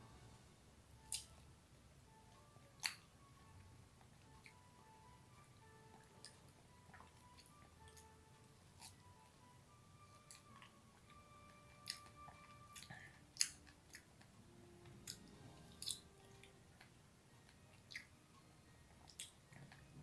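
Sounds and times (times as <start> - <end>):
faint background music: 0.0 - 20.0
chewing wet mouth sounds: 2.8 - 3.0, 11.8 - 14.3, 14.9 - 16.9, 17.5 - 18.1, 18.9 - 19.9.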